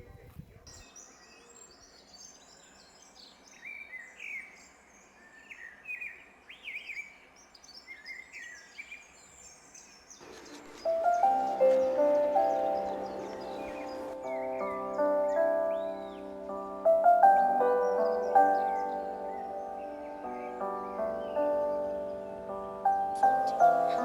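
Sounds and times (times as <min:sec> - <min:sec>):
small birds chirping: 0:00.0 - 0:24.0
music with chime-like notes: 0:10.2 - 0:24.0.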